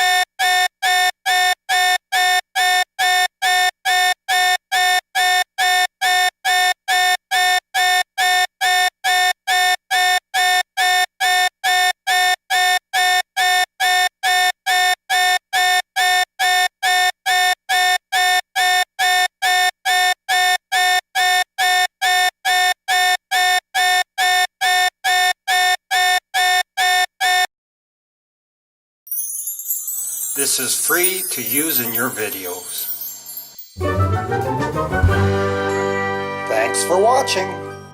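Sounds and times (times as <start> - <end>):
electronic alarm beeping: 0.0 - 27.5.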